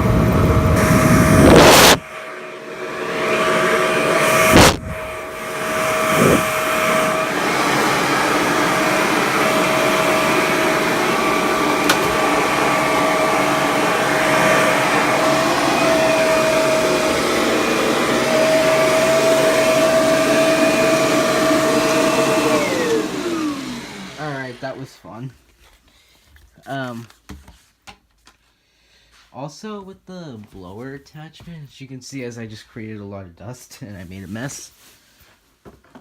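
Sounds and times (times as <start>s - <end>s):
vacuum cleaner motor humming: 0.0s - 24.9s.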